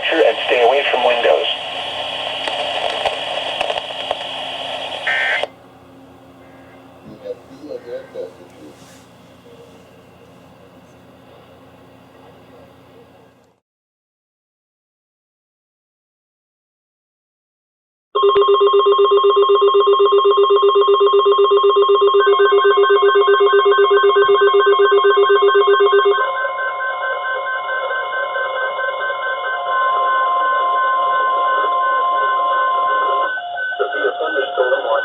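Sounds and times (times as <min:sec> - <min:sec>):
rapidly warbling alarm: 0:06.3 - 0:08.6, 0:18.2 - 0:35.0.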